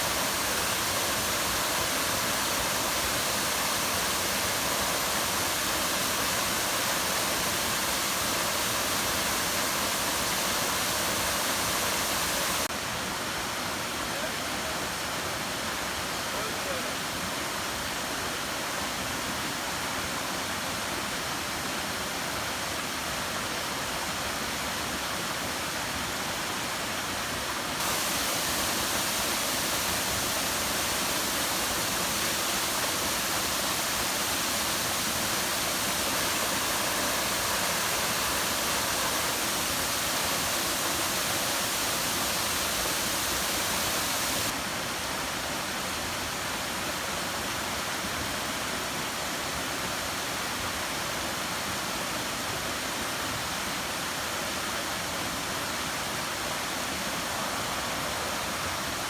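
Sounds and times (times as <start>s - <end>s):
waterfall rushing: 0.0s - 12.8s, 27.5s - 45.2s.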